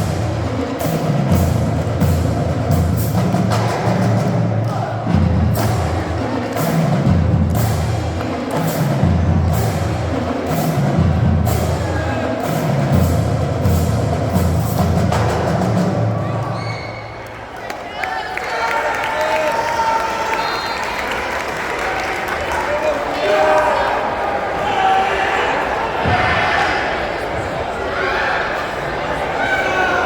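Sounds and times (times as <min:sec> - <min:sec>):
steady drum beat: 0:00.0 - 0:16.6.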